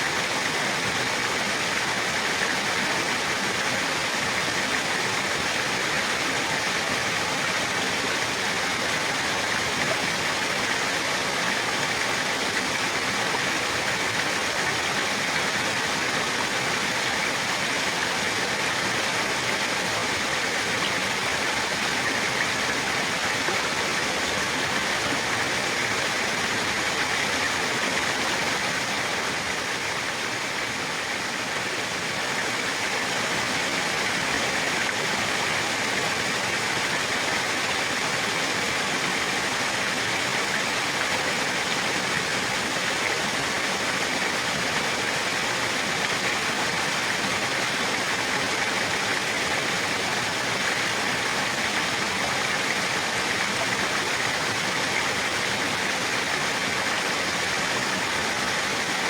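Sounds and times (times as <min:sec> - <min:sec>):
running water rushing: 0:00.0 - 0:59.0.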